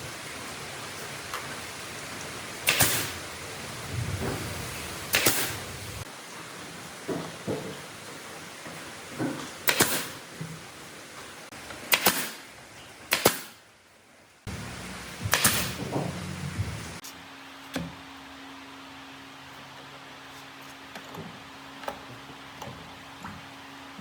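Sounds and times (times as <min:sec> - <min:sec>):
steady low hum: 0:03.1 - 0:06.1, 0:14.5 - 0:17.6.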